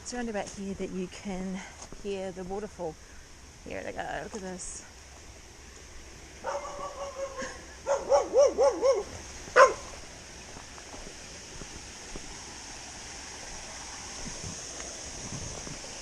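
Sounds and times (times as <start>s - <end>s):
stream rushing: 5.5s - 16.0s
dog yipping: 6.4s - 9.9s
dog barking: 6.4s - 10.0s.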